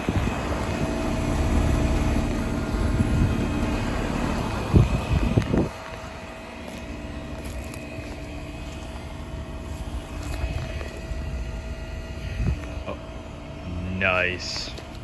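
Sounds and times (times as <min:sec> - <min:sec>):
heat pump humming: 0:00.0 - 0:15.0.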